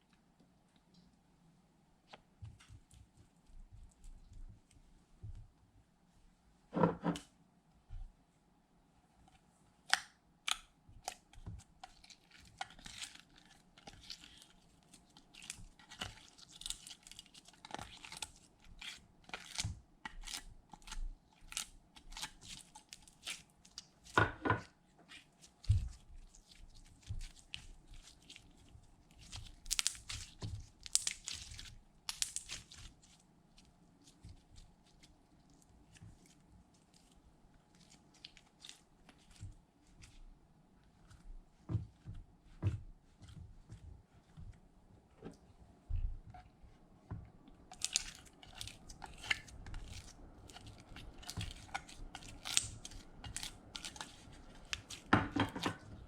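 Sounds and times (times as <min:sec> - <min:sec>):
slime crackling and tearing: 0:09.8 - 0:24.2, 0:25.5 - 0:33.2, 0:47.7 - 0:55.1.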